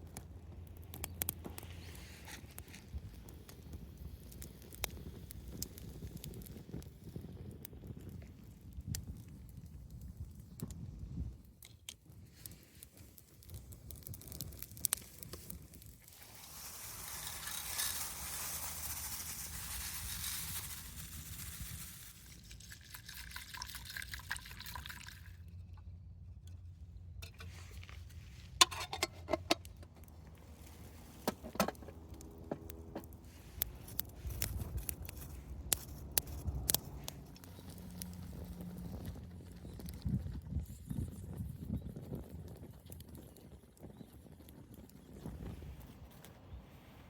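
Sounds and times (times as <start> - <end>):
liquid pouring into container: 16.1 - 21.2, 22.2 - 25.5
cookware clicks and knocks: 28.6 - 29.6.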